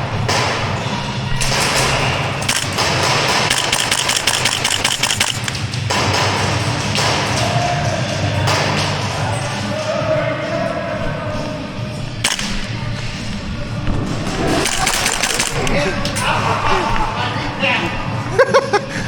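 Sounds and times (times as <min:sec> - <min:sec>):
indoor arena noise: 0:00.0 - 0:19.0
rapid airsoft gunshots: 0:00.2 - 0:07.5, 0:12.2 - 0:12.9, 0:14.4 - 0:15.8.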